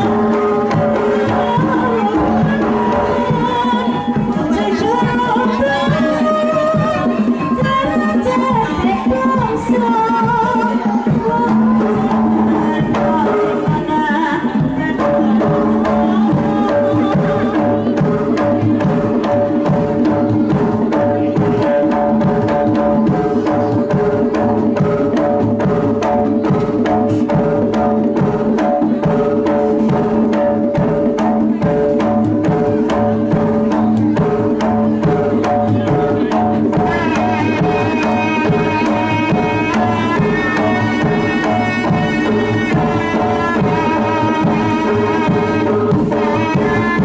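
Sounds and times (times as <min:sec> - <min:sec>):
fast hand drum strokes: 0:00.0 - 0:47.0.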